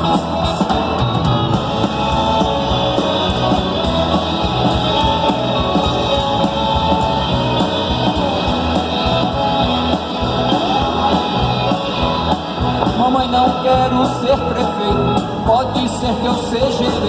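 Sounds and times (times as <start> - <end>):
bass guitar: 0.0 - 17.0
electric guitar: 0.0 - 17.0
steady drum beat: 0.0 - 17.0.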